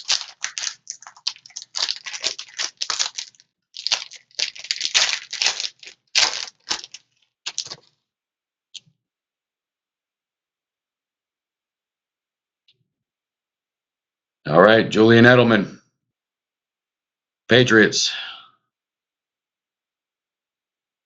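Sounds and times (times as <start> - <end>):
plastic wrapping tearing and crinkling: 0.0 - 7.9.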